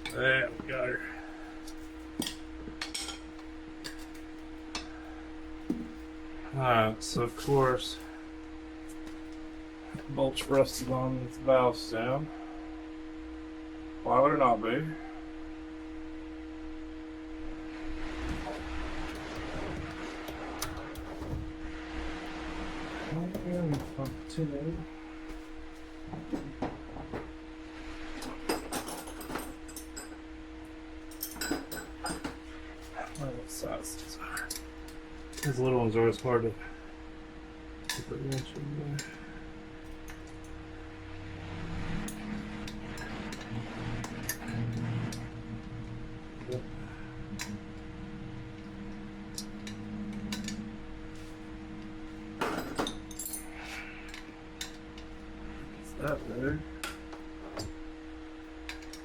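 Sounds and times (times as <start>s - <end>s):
steady background hum: 0.0s - 59.0s
hand tools clicking and clinking: 52.4s - 54.8s.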